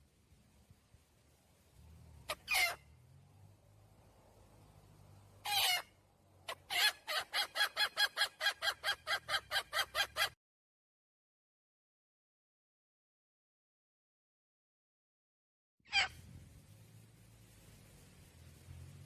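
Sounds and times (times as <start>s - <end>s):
hen clucking: 2.2s - 2.8s, 6.5s - 10.4s.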